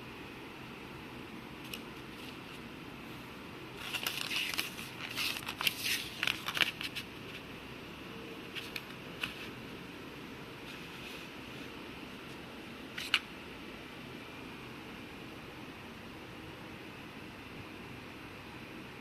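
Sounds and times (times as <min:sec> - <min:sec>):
steady low hiss: 0:00.0 - 0:19.0
packaging crinkling: 0:03.8 - 0:07.4.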